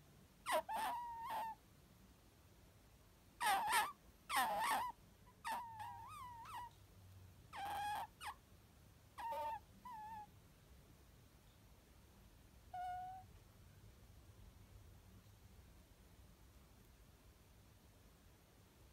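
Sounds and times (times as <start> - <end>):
fox squeaky whining calls: 0.4 - 1.6, 3.4 - 6.7, 7.5 - 8.4, 9.2 - 10.3, 12.7 - 13.3.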